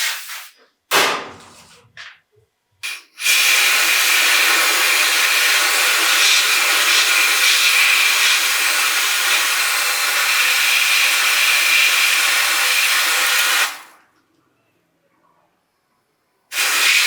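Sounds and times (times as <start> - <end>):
tool whining and hissing: 2.8 - 13.9, 16.5 - 17.0.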